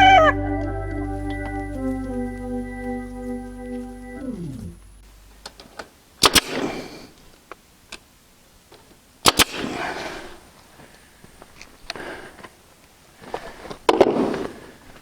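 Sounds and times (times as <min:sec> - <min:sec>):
music track: 0:00.0 - 0:05.0
sharp double snaps with rattle: 0:06.2 - 0:06.6, 0:09.2 - 0:09.7.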